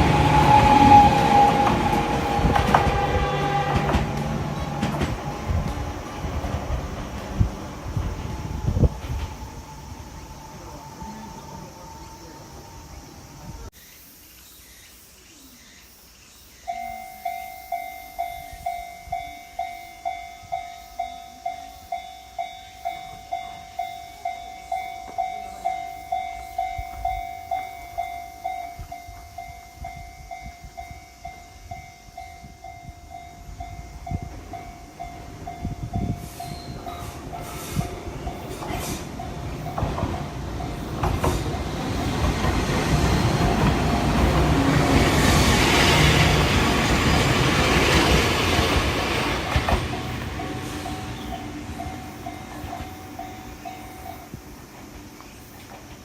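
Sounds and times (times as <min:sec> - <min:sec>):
train wheels rumbling over rails: 0:00.0 - 0:13.7, 0:17.2 - 0:56.0
level crossing warning alarm: 0:07.9 - 0:13.6, 0:16.7 - 0:54.3.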